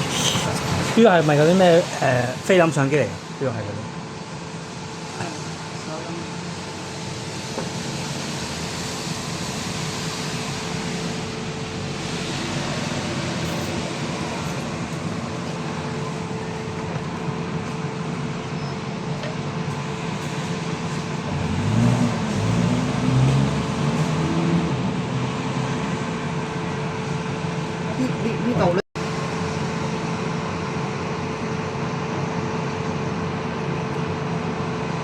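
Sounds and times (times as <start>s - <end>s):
even hiss: 0.0s - 2.9s.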